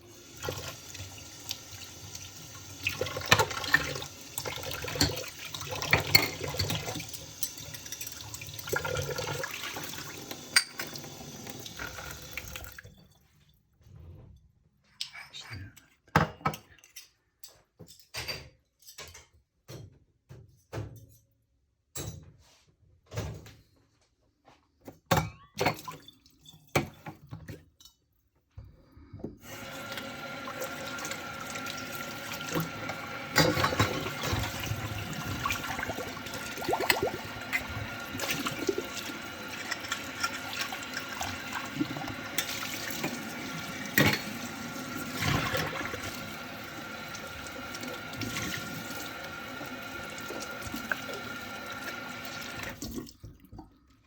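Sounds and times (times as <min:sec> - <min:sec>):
tap water running into sink: 0:00.0 - 0:12.9, 0:29.4 - 0:53.8
dishes clattering: 0:02.8 - 0:11.1, 0:32.5 - 0:46.4.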